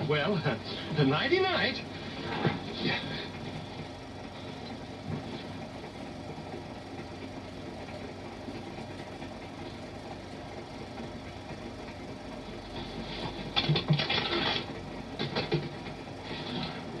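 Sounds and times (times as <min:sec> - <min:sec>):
film soundtrack hiss and hum: 0:00.0 - 0:17.0
moving train rumble: 0:00.0 - 0:17.0.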